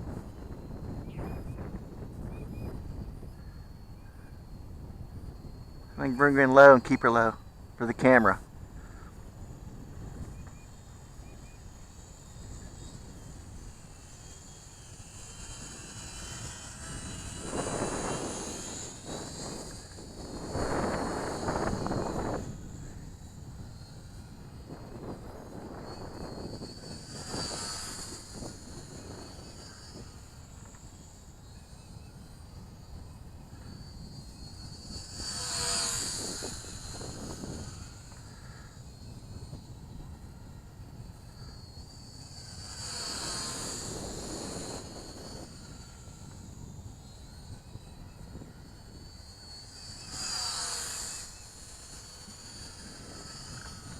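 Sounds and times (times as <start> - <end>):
model plane motors whining: 0.0 - 53.9
wind rumbling on microphone: 0.0 - 53.9.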